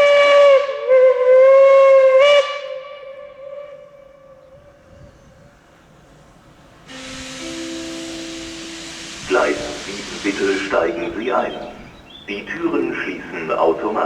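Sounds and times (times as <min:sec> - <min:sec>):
steam locomotive whistle: 0:00.0 - 0:04.8, 0:06.9 - 0:11.9.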